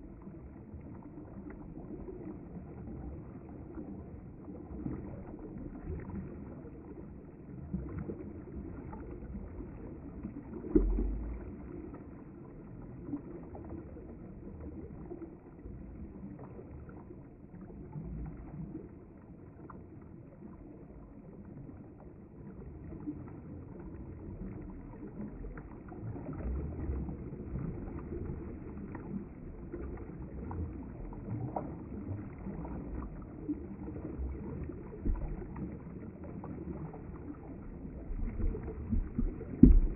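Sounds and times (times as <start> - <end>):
dull thump: 38.4 - 39.9.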